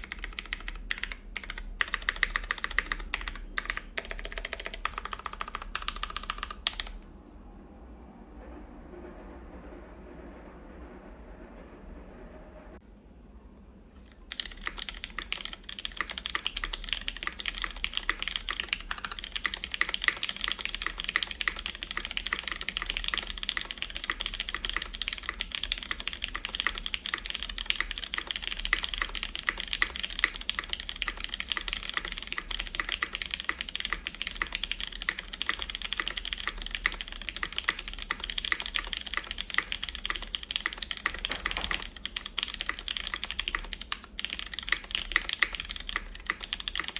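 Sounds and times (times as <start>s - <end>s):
typing on mechanical keyboard: 0.0s - 7.0s, 14.1s - 46.9s.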